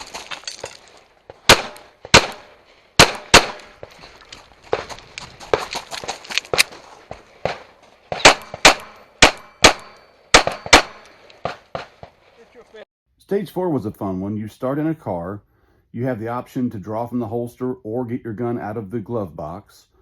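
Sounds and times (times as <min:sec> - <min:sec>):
pistol shots: 0:01.4 - 0:03.9, 0:07.4 - 0:12.1.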